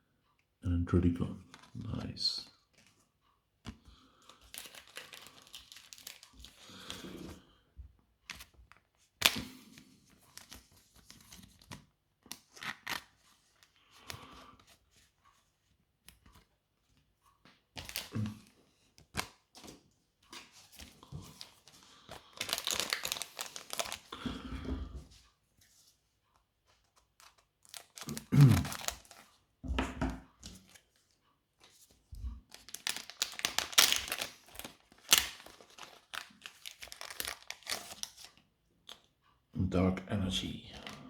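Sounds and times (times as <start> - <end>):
foil wrapper tearing and crinkling: 4.3 - 7.1, 12.3 - 13.2, 17.8 - 18.4, 21.3 - 24.1, 27.2 - 29.3, 32.5 - 38.4.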